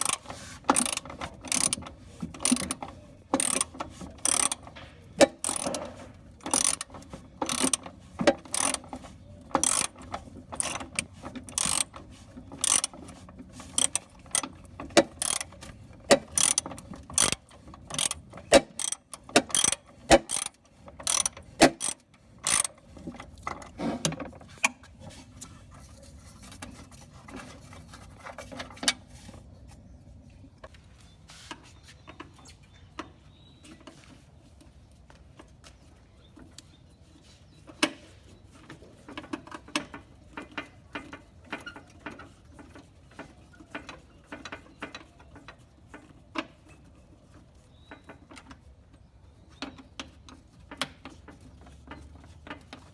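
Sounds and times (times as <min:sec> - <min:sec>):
hand ratchet clicking: 0:00.0 - 0:22.8
faint handling sounds: 0:00.0 - 0:52.9.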